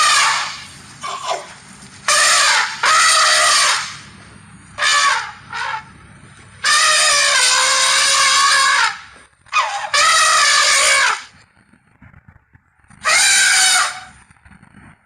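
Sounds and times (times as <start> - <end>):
mammoth trumpeting calls: 0.0 - 4.1, 4.8 - 5.9, 6.6 - 11.3, 13.0 - 14.1.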